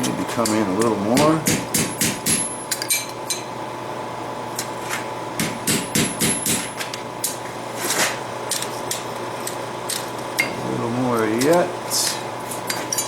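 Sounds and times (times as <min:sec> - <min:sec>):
steady hum: 0:00.0 - 0:13.0
hammer striking steel anvil: 0:01.1 - 0:03.1, 0:05.4 - 0:06.8.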